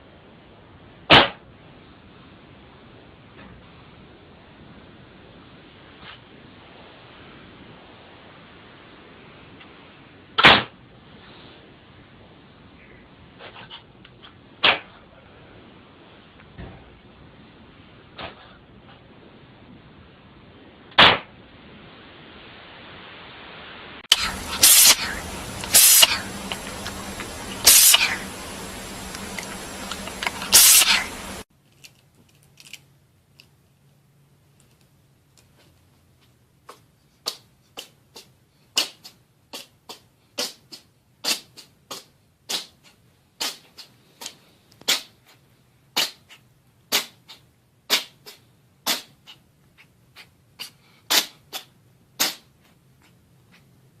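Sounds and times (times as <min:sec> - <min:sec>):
cat sneezing: 0:24.1 - 0:31.4, 0:37.2 - 0:52.7.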